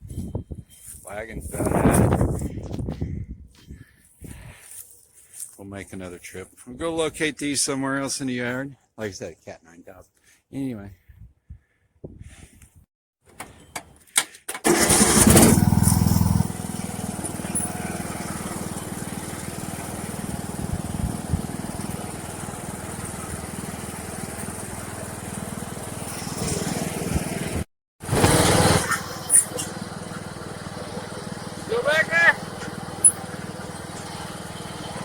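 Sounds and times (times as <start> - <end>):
lawn tractor engine running: 14.5 - 35.0.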